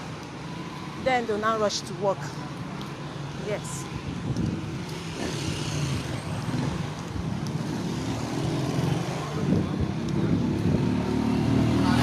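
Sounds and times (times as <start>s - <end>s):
road traffic rumble: 0.0s - 12.0s
wind buffeting microphone: 3.8s - 11.8s.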